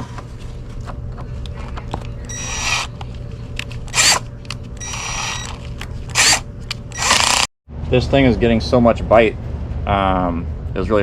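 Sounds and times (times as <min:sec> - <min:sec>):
power drill cutting aluminum: 0:02.3 - 0:02.9, 0:03.9 - 0:04.2, 0:04.8 - 0:07.5.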